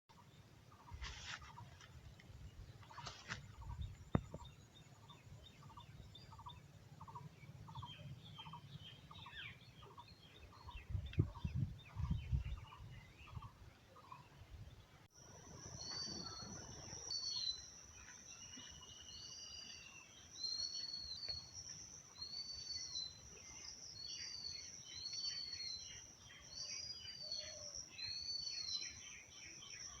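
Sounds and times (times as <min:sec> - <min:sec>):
wind gusts on microphone: 0:10.5 - 0:13.6
birds calling: 0:15.4 - 0:21.6.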